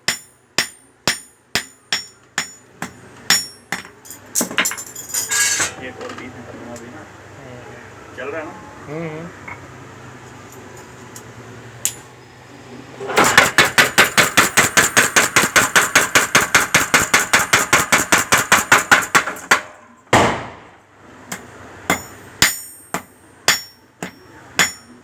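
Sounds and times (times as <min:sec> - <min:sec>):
forging hammer striking metal: 0:00.0 - 0:04.2, 0:13.2 - 0:25.0.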